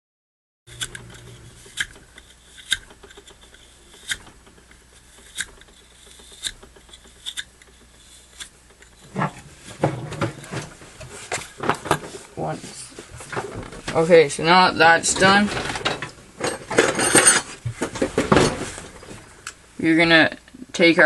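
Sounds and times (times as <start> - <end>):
steel wool scrubbing metal: 0.7 - 9.8
handling noise: 0.7 - 12.4, 14.8 - 19.6.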